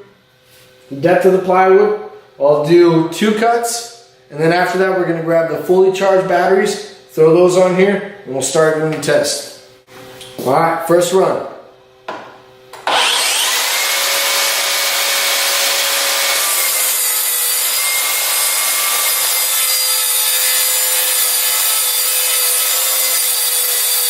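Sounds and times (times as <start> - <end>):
saw cutting plywood: 12.8 - 24.0.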